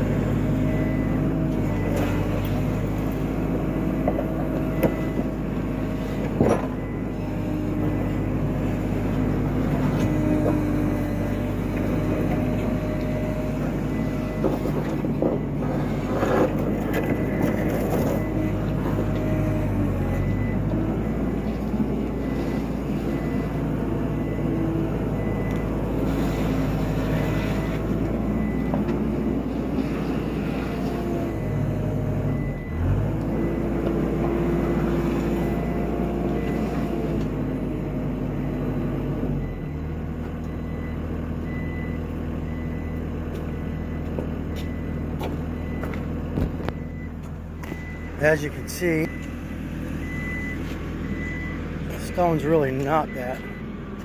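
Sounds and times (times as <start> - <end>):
diesel engine running: 0.0 - 54.0.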